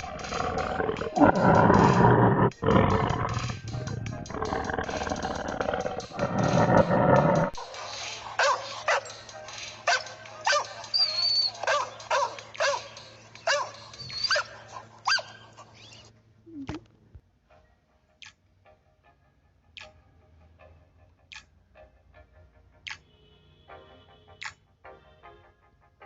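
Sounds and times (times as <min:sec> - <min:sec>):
loud roar: 0:00.0 - 0:07.6
dog barking and yipping: 0:08.4 - 0:09.1, 0:09.9 - 0:12.9, 0:13.5 - 0:15.5.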